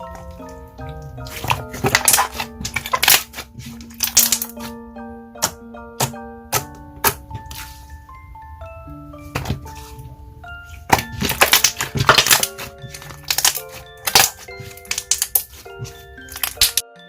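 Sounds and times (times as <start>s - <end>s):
chiming mallet background music: 0.0s - 17.0s
slime crackling and popping: 1.2s - 4.7s, 10.9s - 16.9s.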